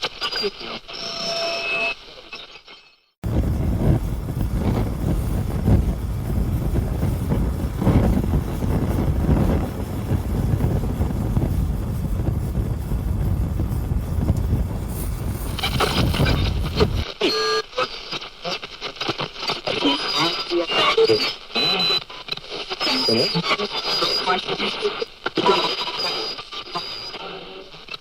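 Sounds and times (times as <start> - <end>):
tyres and wind rumble: 3.2 - 17.0.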